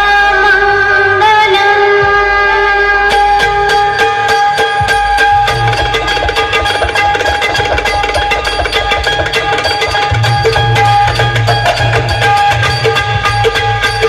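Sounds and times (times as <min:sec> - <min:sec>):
heavy bass: 0:00.0 - 0:08.5
loud indian music over speakers: 0:00.0 - 0:14.0
tabla-like drumming: 0:00.0 - 0:14.0.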